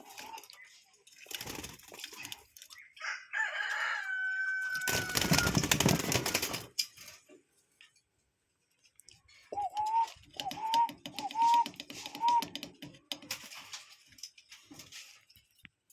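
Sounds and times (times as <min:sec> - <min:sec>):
cuckoo calling: 0:09.3 - 0:12.8.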